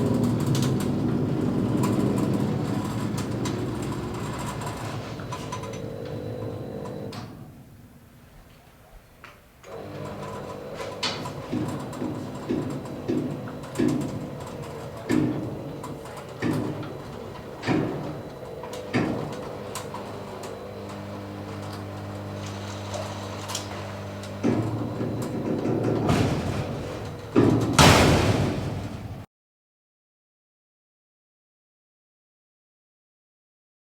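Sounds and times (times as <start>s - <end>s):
garage door motor hum: 0.0s - 29.3s
garage door knocking: 10.0s - 20.8s, 23.8s - 29.2s
loud burst of noise: 24.2s - 29.3s.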